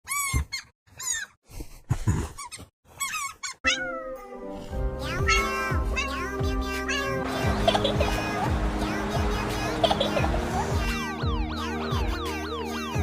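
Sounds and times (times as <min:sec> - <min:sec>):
cat meowing: 0:03.7 - 0:04.2, 0:05.3 - 0:07.2
music with held notes: 0:04.2 - 0:13.0.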